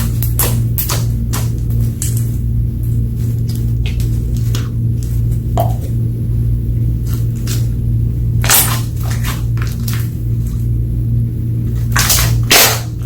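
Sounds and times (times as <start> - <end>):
slime squelching and popping: 0.0 - 6.0, 8.4 - 10.7, 11.7 - 13.0
low background hum: 0.0 - 13.0.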